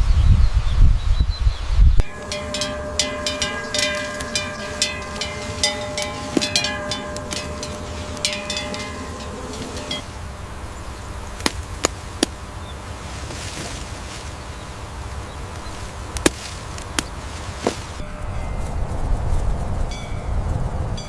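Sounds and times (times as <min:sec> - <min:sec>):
steady low rumble: 0:02.0 - 0:13.2.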